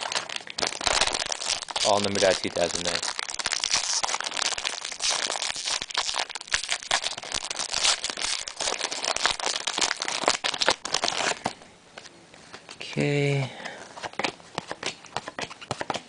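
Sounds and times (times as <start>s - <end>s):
card pack wrapper crinkling: 0.0s - 12.1s.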